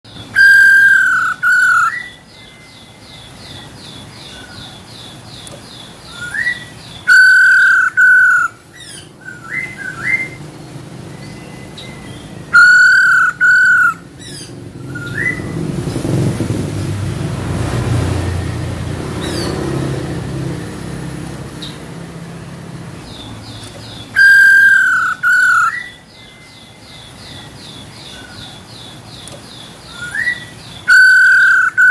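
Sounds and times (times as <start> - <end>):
bird whistled phrases: 0.2 - 3.7, 6.1 - 10.4, 11.2 - 15.6, 24.0 - 28.6, 29.9 - 31.9.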